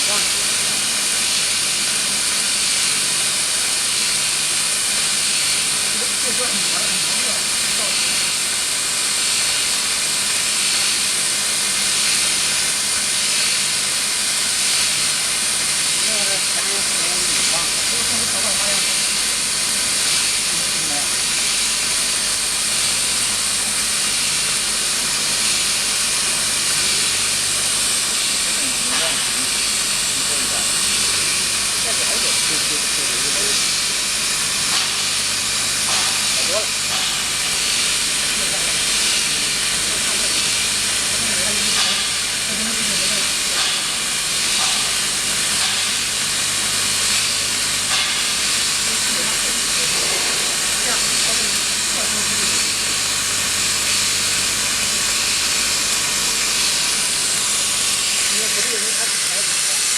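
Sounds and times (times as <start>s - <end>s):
welding arc hissing: 0.0s - 59.9s.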